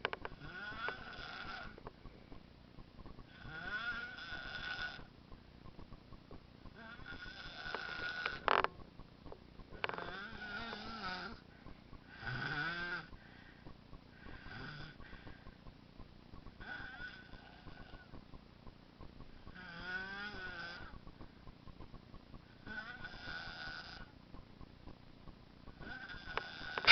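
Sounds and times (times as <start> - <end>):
baby snoring: 0.3 - 1.8, 3.3 - 5.1, 6.8 - 8.6, 9.8 - 11.4, 12.1 - 13.2, 14.2 - 15.2, 16.6 - 18.1, 19.5 - 20.9, 22.6 - 24.1, 25.8 - 26.9.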